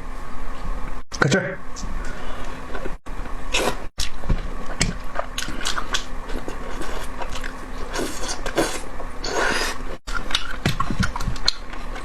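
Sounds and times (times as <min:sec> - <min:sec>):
biting and chewing food: 0:01.9 - 0:12.0.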